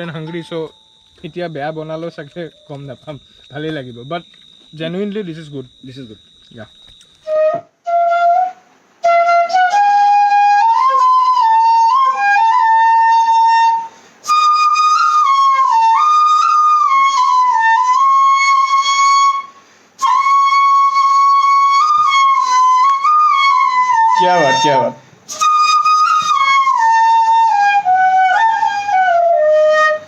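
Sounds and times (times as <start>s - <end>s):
flute-like melody: 6.5s - 30.0s.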